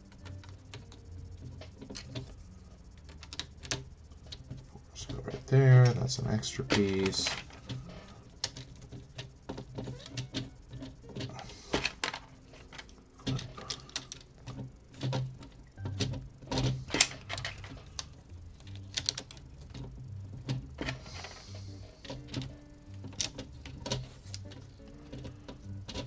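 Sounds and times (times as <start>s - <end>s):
plastic toy bricks clicking: 6.8s - 26.0s.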